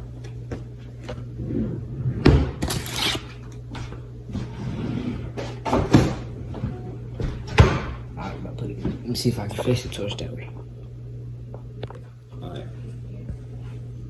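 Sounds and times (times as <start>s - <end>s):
steady low hum: 0.0s - 14.0s
cupboard door and cookware knocks: 7.6s - 8.0s.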